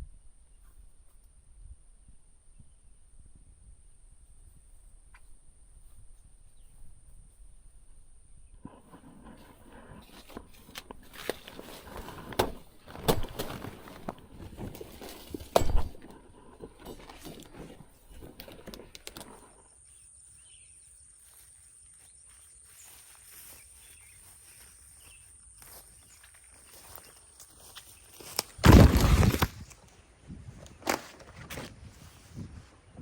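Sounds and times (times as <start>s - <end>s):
faint outdoor background: 0.0s - 33.0s.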